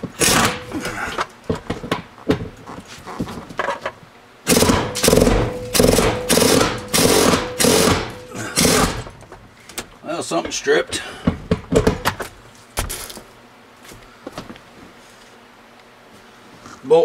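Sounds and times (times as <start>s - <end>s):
impact wrench hammering: 0.0s - 1.0s, 4.5s - 9.2s.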